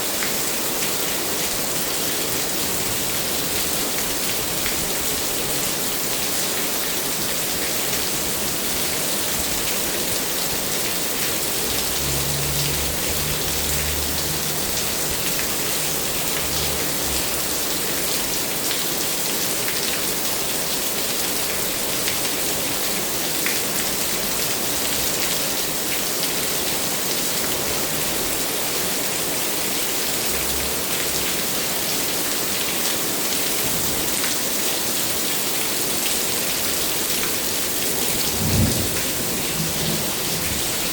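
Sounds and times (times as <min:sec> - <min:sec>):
heavy rain pattering: 0:00.0 - 0:40.9.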